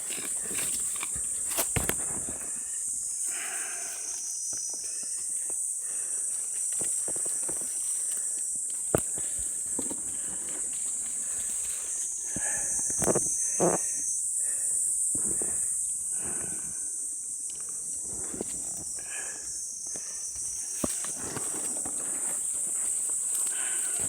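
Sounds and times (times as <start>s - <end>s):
hand tool scraping soil: 0.0s - 2.6s
insects droning: 0.0s - 24.0s.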